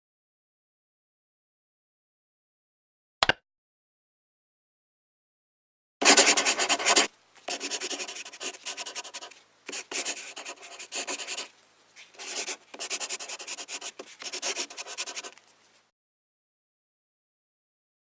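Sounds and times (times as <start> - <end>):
pencil scratching on paper: 6.0 - 15.4.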